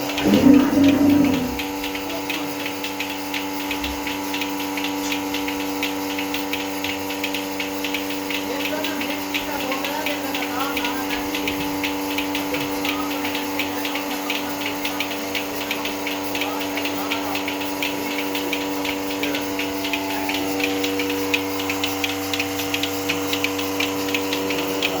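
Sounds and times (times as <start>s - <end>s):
vacuum pump humming: 0.0s - 1.8s
pulsators hissing clicks: 0.0s - 2.1s.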